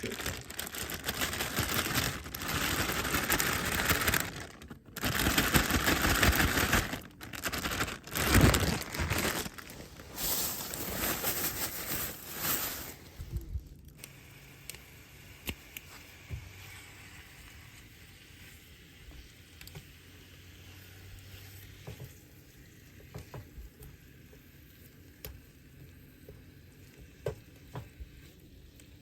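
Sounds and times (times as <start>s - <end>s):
crinkling rustling handling noise: 0.0s - 14.0s.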